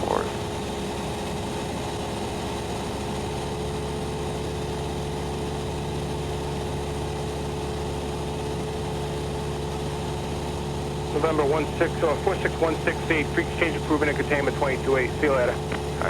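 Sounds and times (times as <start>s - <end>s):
airplane engine and propeller droning: 0.0s - 16.0s
lower hum: 11.0s - 16.0s.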